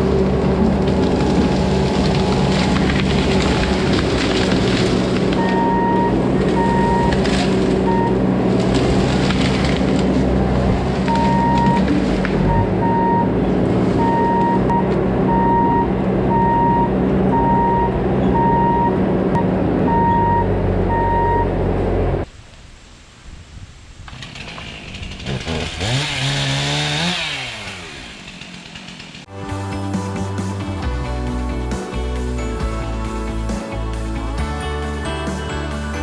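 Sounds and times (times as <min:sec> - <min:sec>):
diesel engine running: 0:00.0 - 0:22.3, 0:24.3 - 0:36.0
backup alarm beeping: 0:05.4 - 0:07.2, 0:07.8 - 0:08.2, 0:11.1 - 0:13.4, 0:14.0 - 0:21.6.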